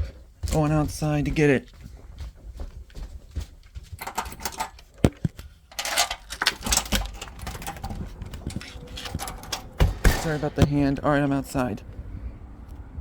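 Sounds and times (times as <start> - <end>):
handling clicks and knocks: 4.0 - 11.0.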